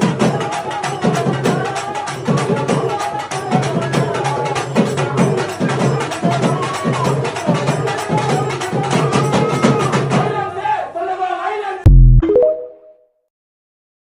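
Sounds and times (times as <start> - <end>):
music with fast percussion: 0.0 - 10.5.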